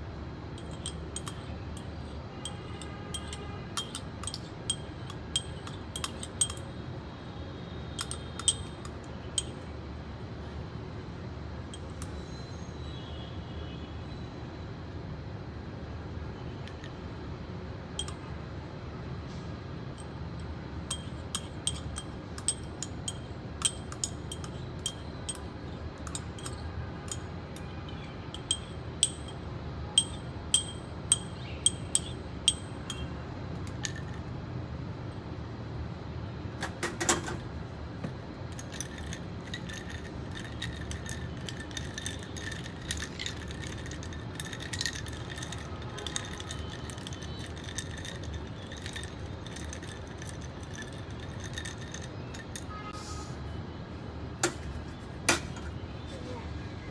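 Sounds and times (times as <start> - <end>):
metal spoon clinking in glass: 0.6 - 6.8, 8.0 - 9.6, 18.0 - 18.2, 20.9 - 29.4, 30.0 - 33.1, 38.5 - 52.8.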